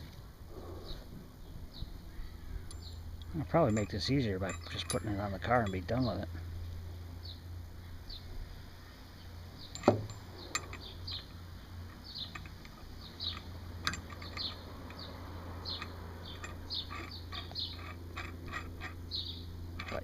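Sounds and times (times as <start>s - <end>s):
birds chirping: 0.5s - 20.0s
metal parts clunking: 2.7s - 6.2s, 9.6s - 19.0s, 19.8s - 20.0s
light clicks of parts handled: 2.7s - 6.8s, 19.8s - 20.0s.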